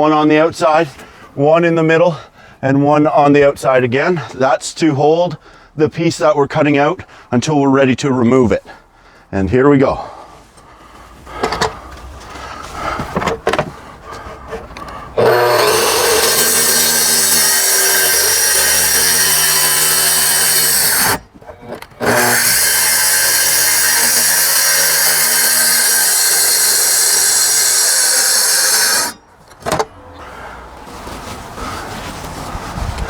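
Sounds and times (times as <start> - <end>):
track saw cutting: 15.2 - 29.2.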